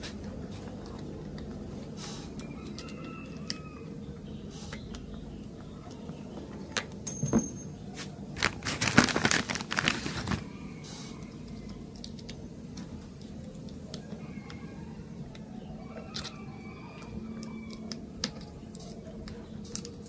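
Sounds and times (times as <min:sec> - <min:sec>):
clattering and crinkling: 0:07.1 - 0:10.5.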